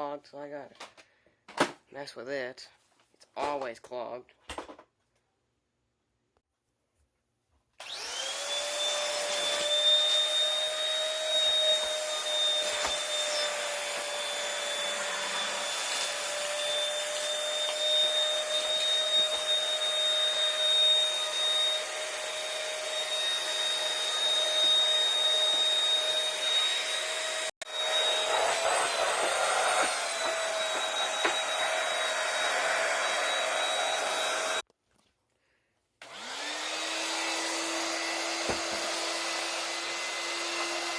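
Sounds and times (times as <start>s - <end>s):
vacuum cleaner motor whining: 7.8s - 34.6s, 36.0s - 40.9s.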